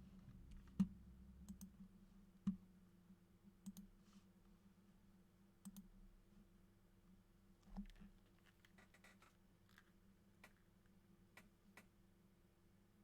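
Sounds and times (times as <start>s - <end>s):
low steady hum: 0.0s - 8.5s.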